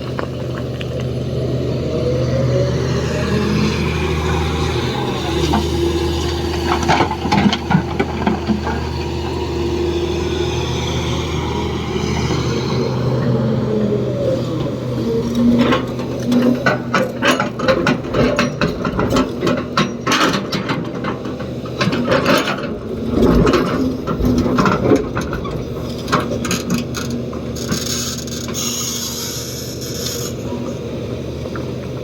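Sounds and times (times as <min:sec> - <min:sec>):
diesel engine running: 0:00.0 - 0:32.0
metallic clanks and rattles: 0:15.6 - 0:28.6.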